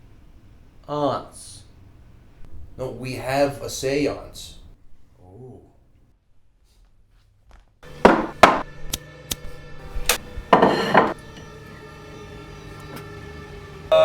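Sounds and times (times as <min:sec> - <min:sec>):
sharp knocks and bangs: 0:07.8 - 0:08.7
low steady drone: 0:07.8 - 0:14.0.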